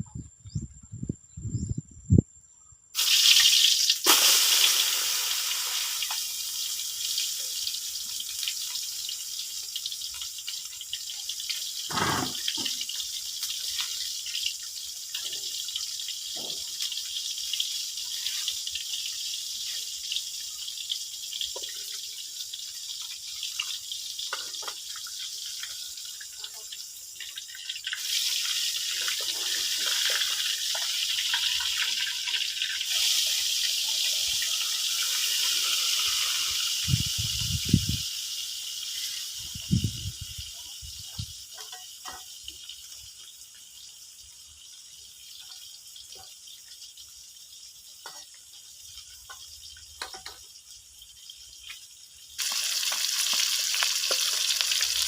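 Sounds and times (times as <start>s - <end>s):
water running: 3.0s - 16.8s, 21.4s - 38.1s, 52.4s - 55.0s
water drips and splashes: 5.8s - 38.1s, 38.9s - 55.0s.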